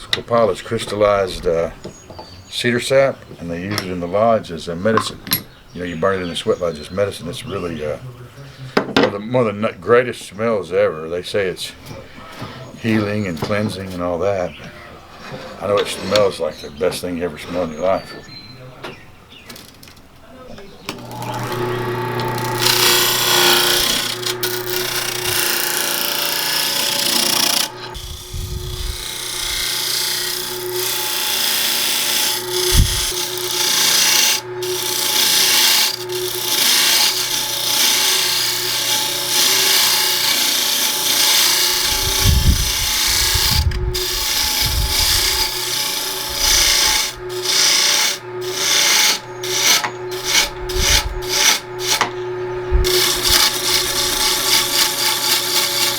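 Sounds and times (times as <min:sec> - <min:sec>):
wood lathe humming: 0:09.9 - 0:18.8, 0:20.8 - 0:55.9
gouge scraping wood on lathe: 0:11.3 - 0:18.4, 0:20.9 - 0:55.9.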